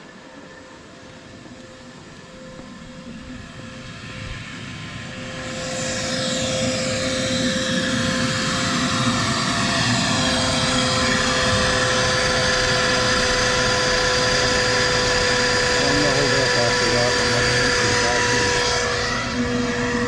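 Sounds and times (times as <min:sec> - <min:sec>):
electric motor whining: 0:05.1 - 0:20.0.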